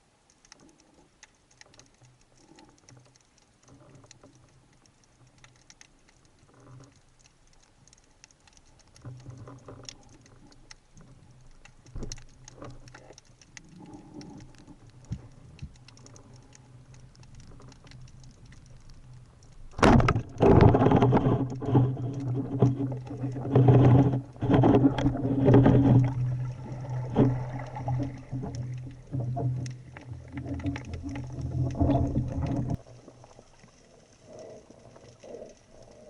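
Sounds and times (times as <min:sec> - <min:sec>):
faint underwater clicks: 0:00.0 - 0:36.0
churning gurgling water: 0:19.7 - 0:36.0.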